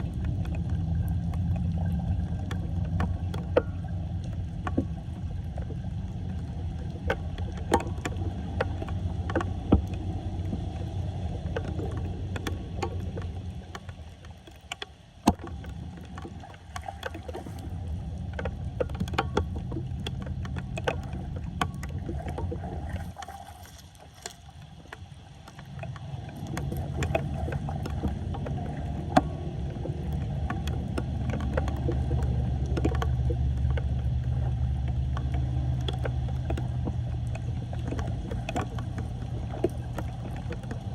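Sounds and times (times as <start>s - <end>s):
floodwater churning and splashing: 0.0s - 40.9s
sharp knocks and clicks: 6.8s - 22.6s, 25.8s - 40.9s.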